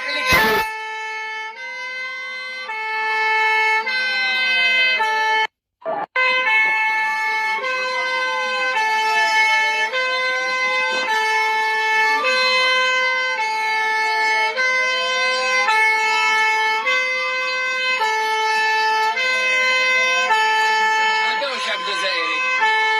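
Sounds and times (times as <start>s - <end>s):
rising and falling siren tone: 2.7s - 22.9s
alternating two-tone alarm: 6.1s - 22.9s.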